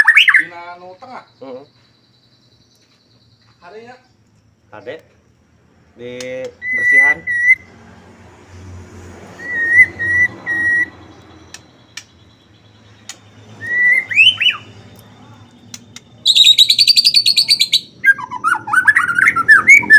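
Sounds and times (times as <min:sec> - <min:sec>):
songbird whistling and trilling: 0:00.0 - 0:00.6, 0:06.6 - 0:07.7, 0:09.4 - 0:14.8, 0:15.9 - 0:19.9.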